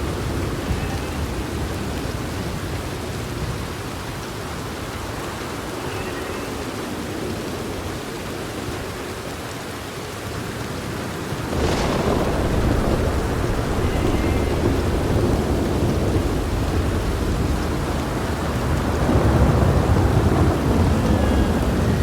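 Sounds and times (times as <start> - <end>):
steady rain: 0.0 - 22.0
low thunder rumbling: 10.5 - 22.0
loud thunderclap: 11.3 - 22.0.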